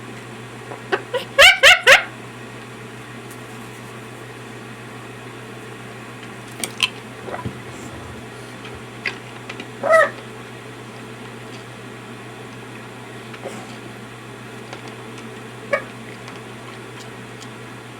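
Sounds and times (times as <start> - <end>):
parrot calls: 0.7 - 2.1, 9.8 - 10.2
steady low hum: 2.9 - 12.2.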